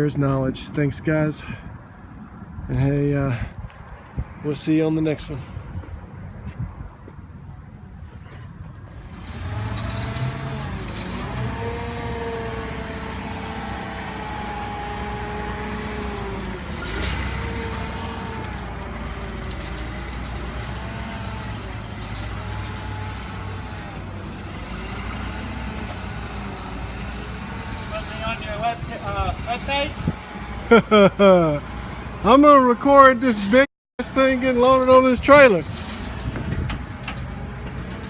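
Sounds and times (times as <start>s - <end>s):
heavy vehicle engine running: 8.2s - 38.0s.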